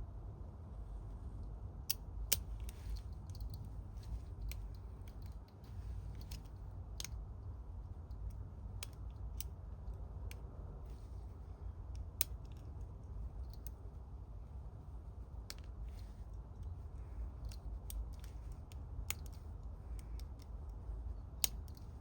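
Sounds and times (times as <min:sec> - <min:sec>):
lock pick metallic clicks: 0:01.9 - 0:07.2, 0:08.2 - 0:09.6, 0:11.9 - 0:13.8, 0:17.3 - 0:22.0.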